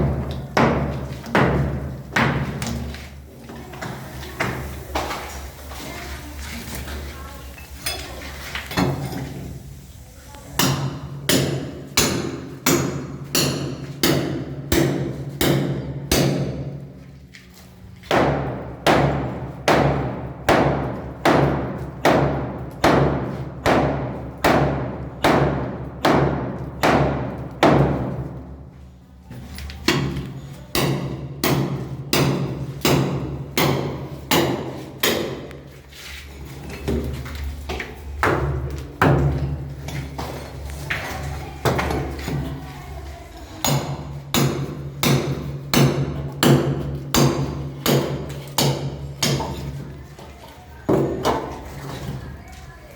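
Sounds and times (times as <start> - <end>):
hammer striking masonry: 0.0 - 2.9, 10.6 - 16.9, 18.0 - 28.4, 29.8 - 35.6, 38.2 - 40.4, 43.6 - 49.8.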